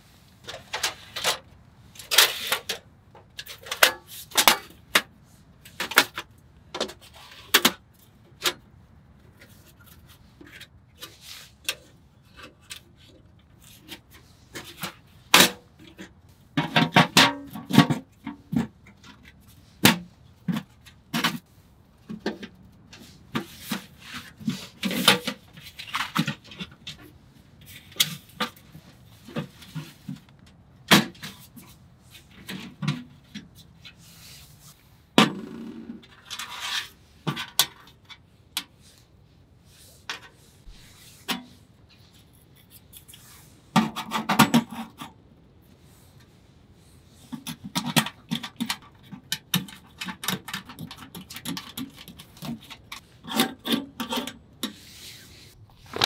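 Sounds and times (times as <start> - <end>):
rustling: 54.8 - 56.0.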